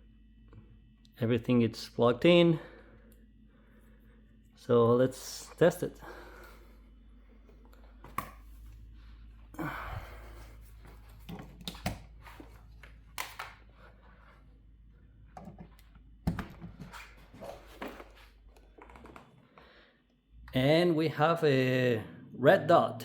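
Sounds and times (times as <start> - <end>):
faint low hum: 0.0 - 23.0
light clicks handling connectors: 10.8 - 13.9.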